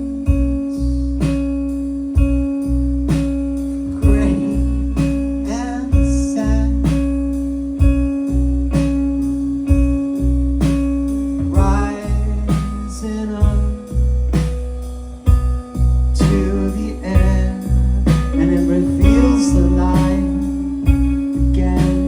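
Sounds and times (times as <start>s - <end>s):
bass guitar: 0.0s - 22.0s
electric guitar: 0.0s - 22.0s
held low note: 0.0s - 22.0s
drum beat: 3.1s - 7.2s, 11.6s - 12.8s, 13.4s - 13.8s, 14.4s - 16.6s, 17.2s - 21.1s
person singing: 3.9s - 7.1s, 11.5s - 13.9s, 16.2s - 22.0s.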